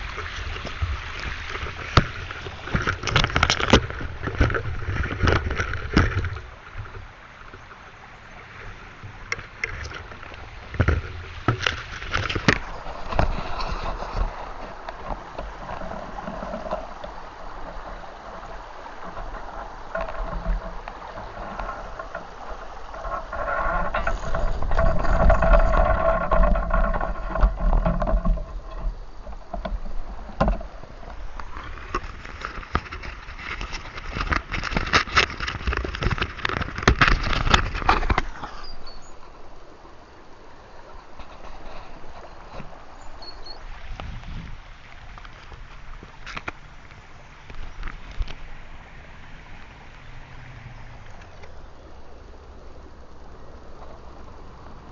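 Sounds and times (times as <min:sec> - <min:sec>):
handling knocks and rustles: 0:00.0 - 0:07.6, 0:09.3 - 0:17.2, 0:19.0 - 0:38.8
stream flowing and gurgling: 0:00.0 - 0:54.9.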